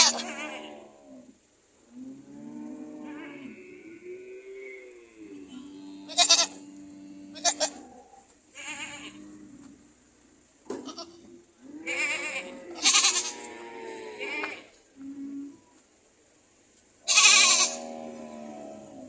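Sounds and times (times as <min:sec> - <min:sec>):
goats bleating: 0:00.0 - 0:00.8, 0:05.5 - 0:07.9, 0:08.6 - 0:09.3, 0:10.7 - 0:14.8, 0:17.1 - 0:19.0.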